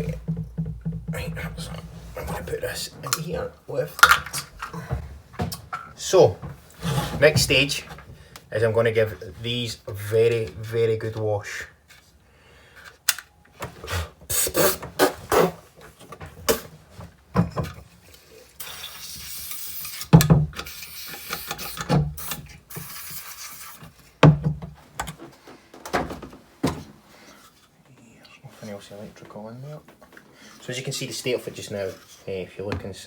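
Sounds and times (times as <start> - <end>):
tool parts knocking and scraping: 0.0 - 3.4, 15.8 - 27.6.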